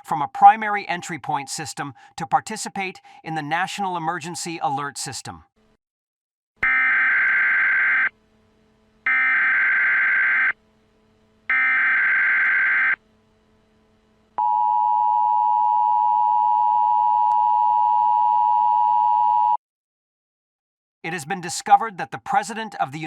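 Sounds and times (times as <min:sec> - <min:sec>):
digital data tone bursts: 0:09.1 - 0:10.6, 0:11.5 - 0:13.0.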